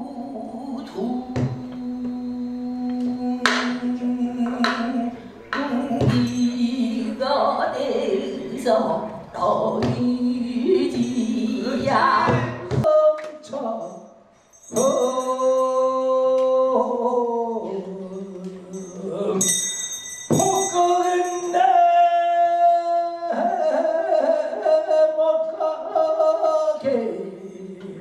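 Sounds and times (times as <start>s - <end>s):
traditional singing with held notes: 0.0s - 28.0s.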